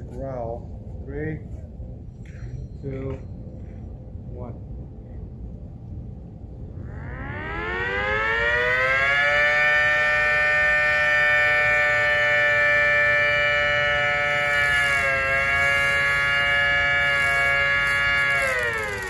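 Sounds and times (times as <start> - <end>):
motor-driven siren wailing: 6.7 - 19.0.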